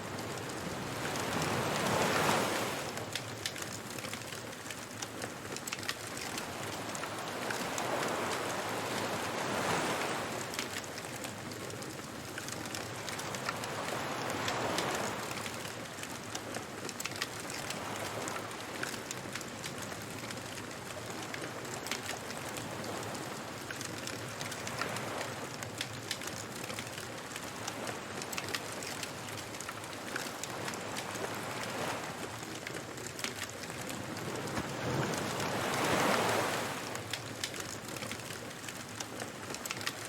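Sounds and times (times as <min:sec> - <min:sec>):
surf washing: 0:00.0 - 0:04.2, 0:04.8 - 0:16.2, 0:26.8 - 0:40.0
wood fire crackling and popping: 0:03.0 - 0:07.2, 0:10.5 - 0:13.6, 0:25.8 - 0:31.5.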